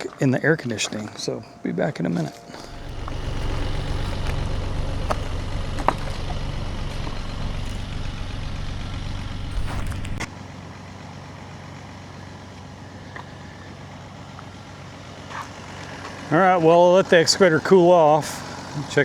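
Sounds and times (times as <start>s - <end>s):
quiet steady hum: 0.3s - 10.3s
engine idling: 0.7s - 19.0s.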